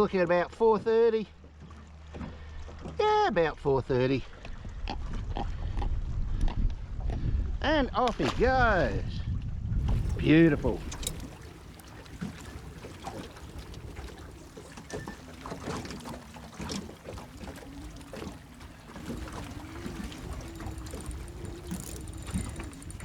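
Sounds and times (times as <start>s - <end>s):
water lapping: 1.2s - 3.3s, 9.8s - 23.0s
boat motor hum: 9.8s - 23.0s
small knocks: 9.8s - 23.0s.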